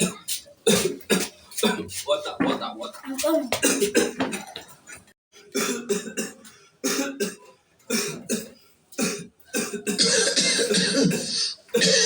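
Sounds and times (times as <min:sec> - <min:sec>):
person coughing: 0:00.0 - 0:01.9, 0:03.5 - 0:04.6, 0:05.6 - 0:12.0.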